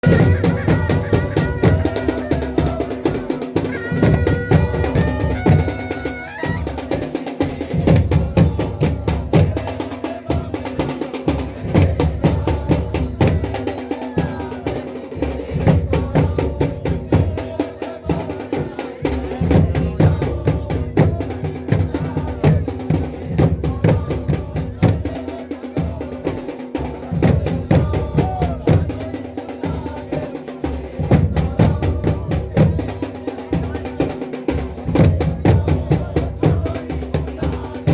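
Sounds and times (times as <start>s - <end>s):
drums playing dense rhythm: 0.0s - 37.9s.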